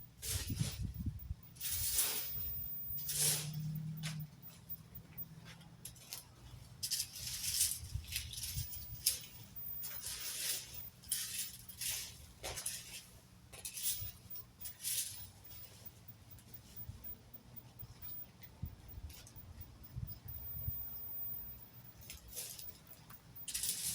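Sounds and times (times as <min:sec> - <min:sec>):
dry leaves rustling and scraping: 0:06.0 - 0:15.9, 0:23.5 - 0:23.9.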